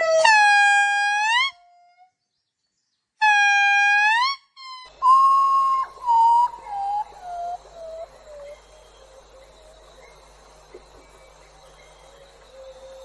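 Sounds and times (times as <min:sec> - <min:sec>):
descending whistle-like notes: 0:04.9 - 0:13.0
rising animal call: 0:04.9 - 0:13.0.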